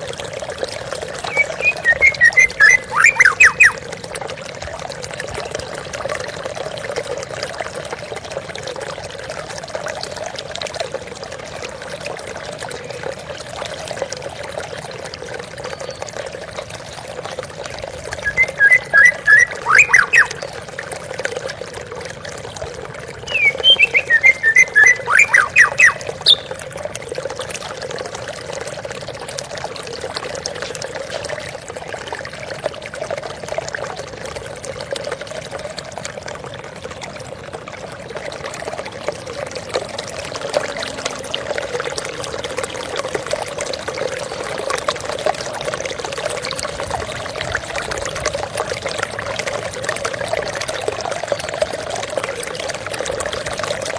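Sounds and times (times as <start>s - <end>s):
flowing water: 0.0s - 53.9s.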